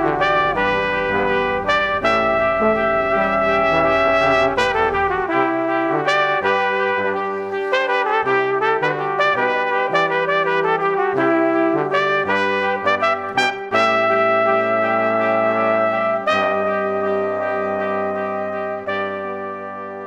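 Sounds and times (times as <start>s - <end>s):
low rumble: 0.0s - 5.3s
brass quartet playing slow melody: 0.0s - 5.4s.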